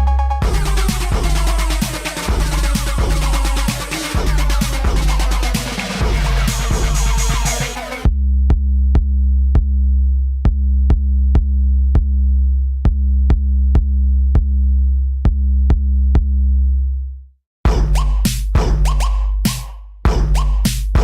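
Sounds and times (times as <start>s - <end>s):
deep held bass note: 0.0s - 9.8s
clicking drum-machine beat: 0.3s - 8.1s, 17.7s - 21.0s.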